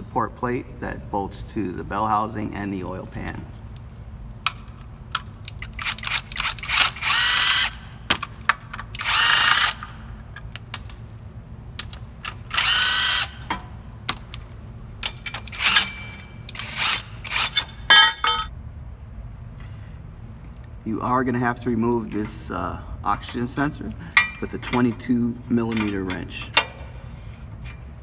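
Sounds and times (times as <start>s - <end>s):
power tool spinning out bolts: 5.6s - 7.8s, 9.0s - 9.9s, 12.3s - 13.6s, 15.0s - 18.5s
clicks and knocks of metal handling: 13.4s - 18.5s, 23.2s - 28.0s.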